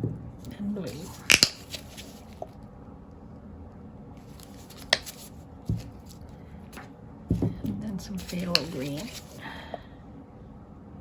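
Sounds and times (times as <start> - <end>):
faint room noise: 0.0 - 11.0
paint cup clicks: 1.1 - 2.0, 8.2 - 9.4.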